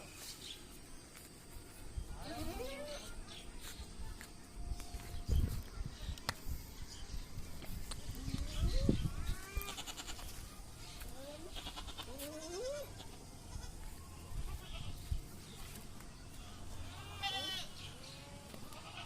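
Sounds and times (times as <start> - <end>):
goats bleating: 9.4 - 10.4, 11.4 - 13.9, 16.9 - 19.0.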